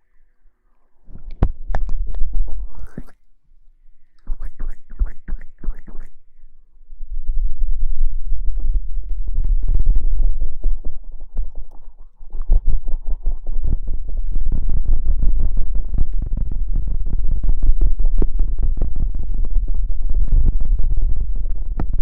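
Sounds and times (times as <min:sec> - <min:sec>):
heavy low rumble: 0:04.2 - 0:22.0.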